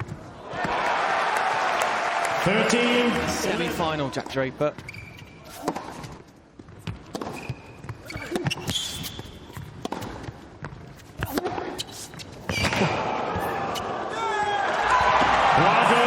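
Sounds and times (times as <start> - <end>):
rubber sole squeaks on court: 4.8 - 6.2, 7.1 - 10.1, 10.9 - 12.9
tennis ball strikes and bounces: 6.8 - 11.7.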